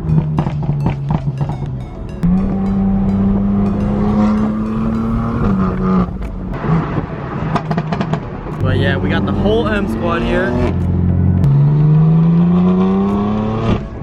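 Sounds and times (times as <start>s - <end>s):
music: 0.0s - 7.3s, 8.5s - 11.0s, 13.1s - 14.0s
car engine revving: 0.0s - 14.0s.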